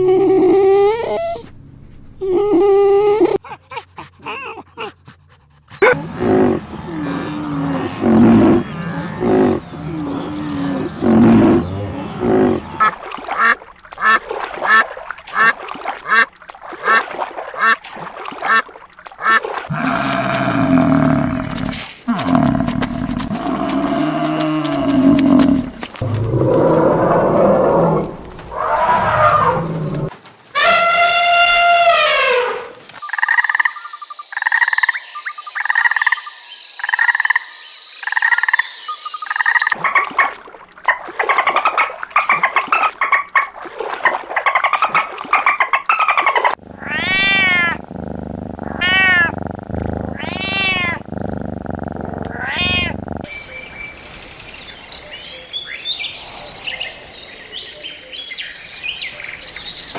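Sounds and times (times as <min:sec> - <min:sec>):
pulsed animal calls: 0:05.7 - 0:16.3, 0:41.0 - 0:53.3
animal chatter: 0:05.8 - 0:14.8, 0:46.6 - 0:53.3.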